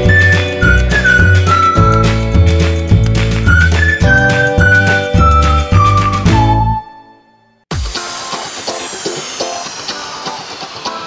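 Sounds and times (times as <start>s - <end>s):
bass-heavy electronic music: 0.0s - 6.7s.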